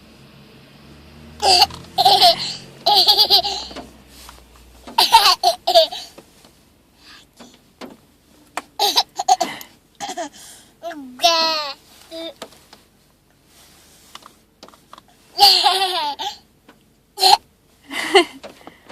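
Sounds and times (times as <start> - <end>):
laughing in bursts: 1.4 - 3.8, 5.0 - 6.1, 8.8 - 10.3, 17.2 - 18.4.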